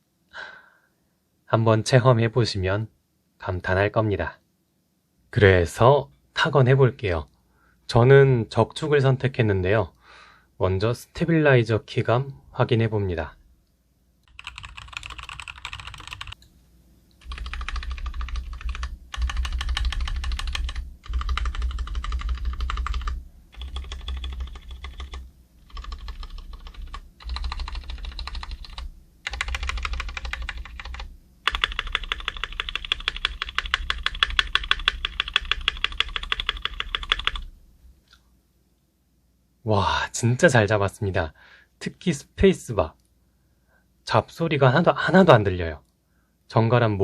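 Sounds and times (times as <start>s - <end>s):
keyboard long keys pressed rapidly: 14.3s - 16.4s, 17.2s - 37.5s.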